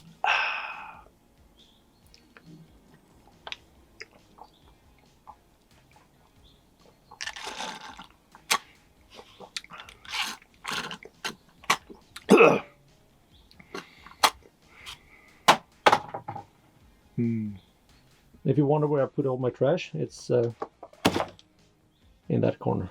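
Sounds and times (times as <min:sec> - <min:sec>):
person sipping and swallowing: 0:07.2 - 0:12.5
loud gulp: 0:12.2 - 0:12.7.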